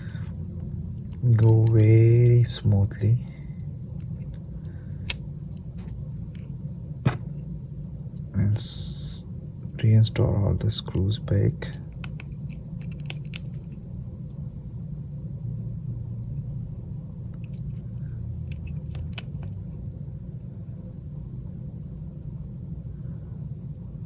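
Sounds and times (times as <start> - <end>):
steady low rumble: 0.0 - 24.0
screwdriver clicking on metal parts: 12.0 - 13.6.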